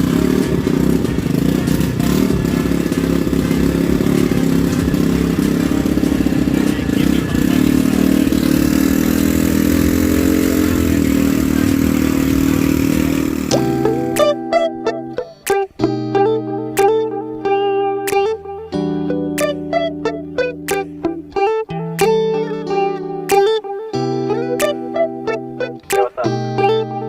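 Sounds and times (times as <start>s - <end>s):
small engine running: 0.0s - 14.2s.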